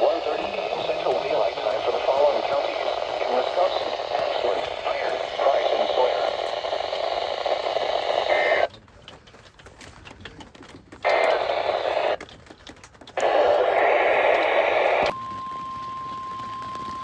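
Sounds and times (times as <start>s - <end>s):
faint radio static: 0.0s - 8.7s, 11.0s - 12.2s, 13.2s - 15.2s
harsh buzzing data bursts: 0.0s - 8.7s.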